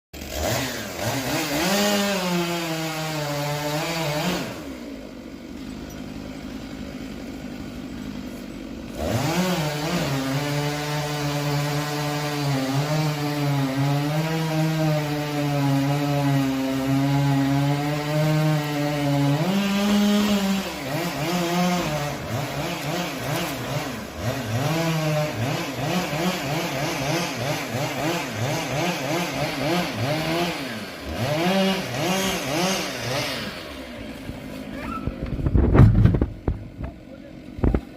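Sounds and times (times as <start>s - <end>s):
chainsaw engine revving: 0.2s - 37.9s.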